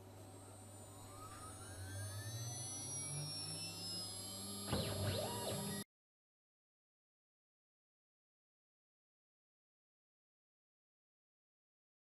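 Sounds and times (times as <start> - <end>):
router spindle whine: 0.0 - 5.8.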